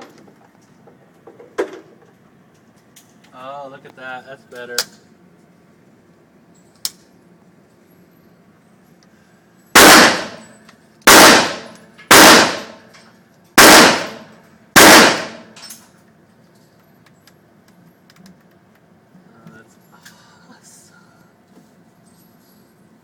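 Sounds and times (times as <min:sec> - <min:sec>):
rifle shots: 0:09.8 - 0:12.9, 0:13.6 - 0:15.6.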